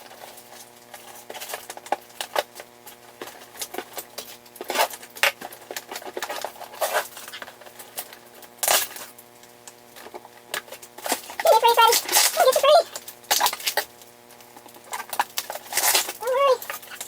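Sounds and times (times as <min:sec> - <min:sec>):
loud plastic rustles: 0:00.0 - 0:17.0
plastic packaging clicks and crinkles: 0:00.0 - 0:17.0.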